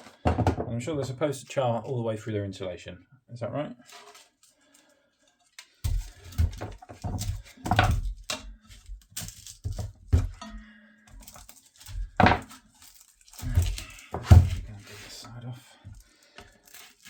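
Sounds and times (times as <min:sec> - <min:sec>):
knocks and thuds on boiler casing: 0:00.2 - 0:00.7, 0:09.6 - 0:10.5
scraping of casing: 0:05.5 - 0:17.0.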